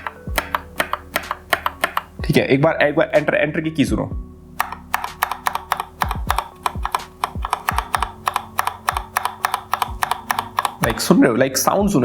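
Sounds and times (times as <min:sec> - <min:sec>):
keyboard keys clacking: 0:00.0 - 0:02.4, 0:04.6 - 0:11.2.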